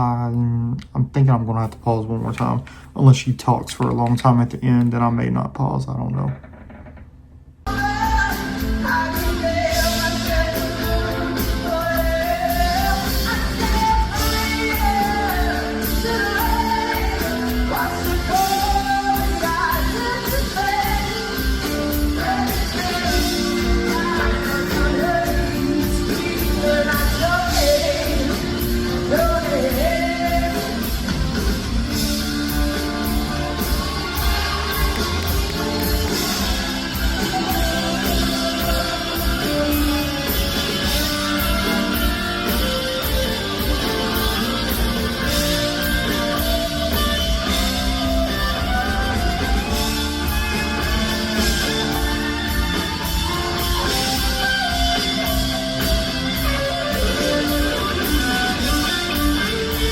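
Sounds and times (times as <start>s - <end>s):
live band playing: 7.6s - 59.9s
woman singing pop ballad: 7.7s - 31.2s
steady drum beat: 7.7s - 59.9s.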